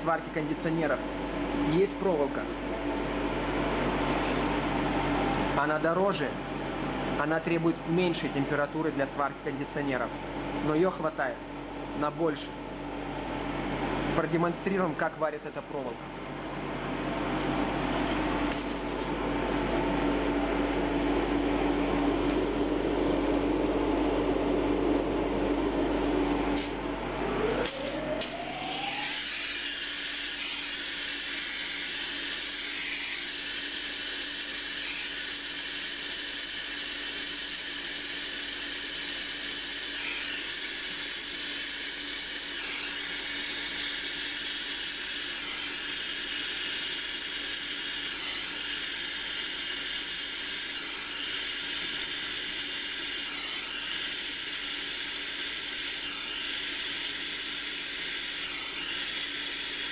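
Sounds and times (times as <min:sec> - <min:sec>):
short rising whistle: 0:27.2 - 0:33.8
gas torch flame hissing: 0:27.4 - 0:59.9.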